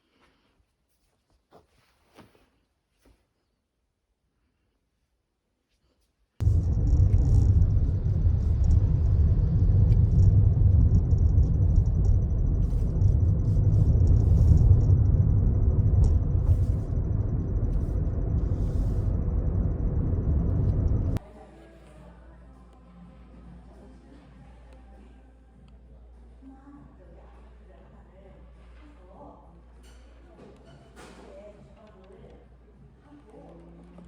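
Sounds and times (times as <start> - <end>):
faint high whine: 6.4 - 21.2
loud low rumble: 6.4 - 21.2.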